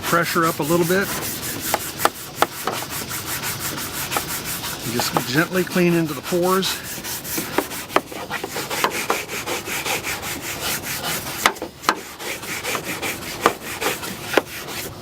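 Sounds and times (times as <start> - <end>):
brush scrubbing plastic: 0.0 - 15.0.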